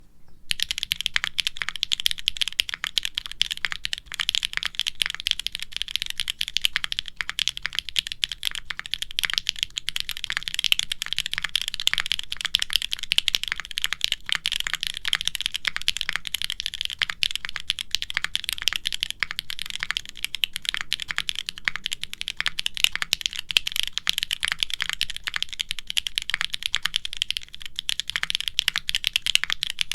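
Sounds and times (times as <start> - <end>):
fast typing on mechanical keyboard: 0.5 - 29.9.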